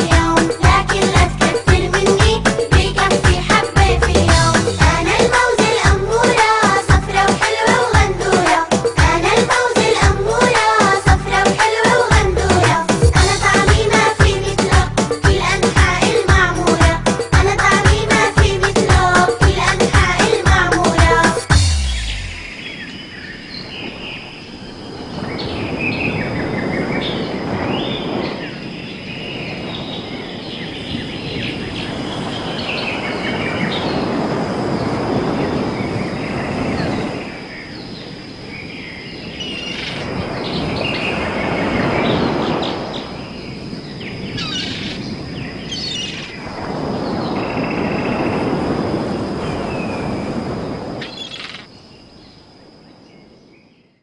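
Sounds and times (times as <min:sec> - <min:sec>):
rushing noise: 0:02.4 - 0:15.0, 0:16.8 - 0:23.1
birds chirping: 0:17.6 - 0:34.2, 0:35.6 - 0:48.3, 0:51.0 - 0:52.4.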